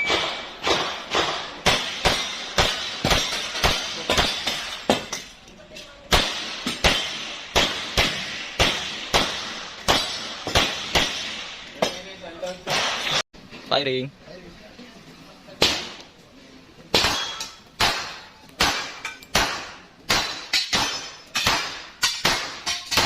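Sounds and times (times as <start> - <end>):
pistol shots echoing: 0.0 - 5.1, 6.1 - 11.8, 16.9 - 23.0.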